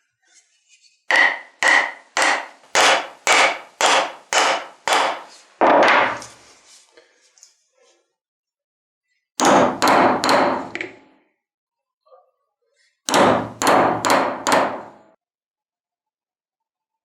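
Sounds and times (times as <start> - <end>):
hammer blows: 1.1 - 6.4, 13.1 - 15.0.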